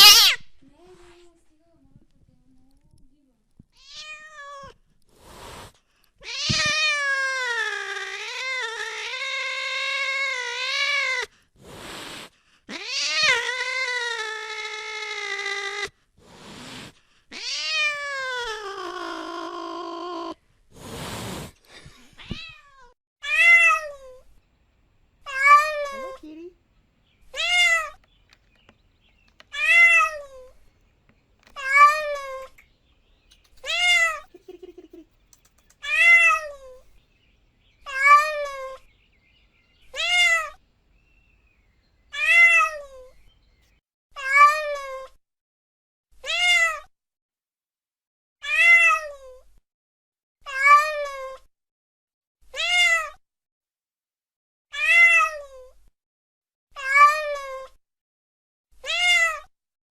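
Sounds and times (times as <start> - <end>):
cat meowing: 0.0 - 0.4, 3.8 - 4.7, 22.2 - 24.3, 25.2 - 26.6, 27.2 - 30.8, 31.4 - 37.0, 37.8 - 38.9, 39.8 - 40.6, 42.1 - 43.1.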